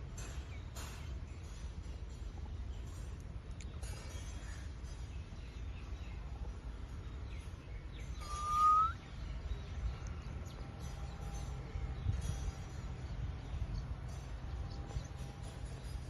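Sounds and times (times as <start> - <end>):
parrot whistled call: 8.2 - 9.0.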